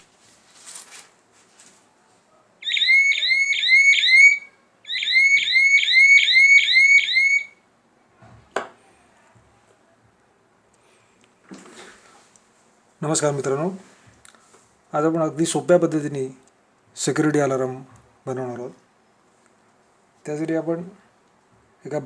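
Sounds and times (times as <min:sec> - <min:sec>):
alarm buzzer warbling siren: 0:02.6 - 0:07.6.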